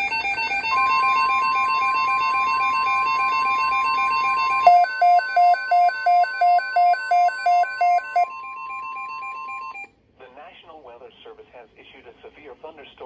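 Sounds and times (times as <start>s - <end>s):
loud beeping alarm: 0.0s - 9.9s
steady alert tone: 0.7s - 9.8s.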